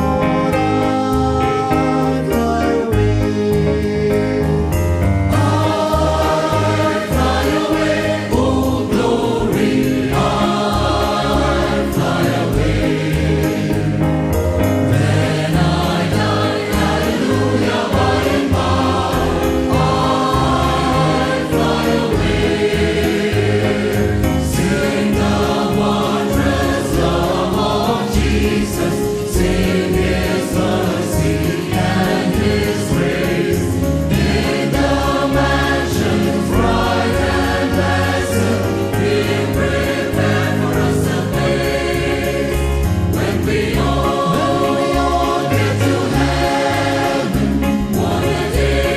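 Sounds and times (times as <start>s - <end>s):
choir singing a hymn: 0.0s - 48.9s.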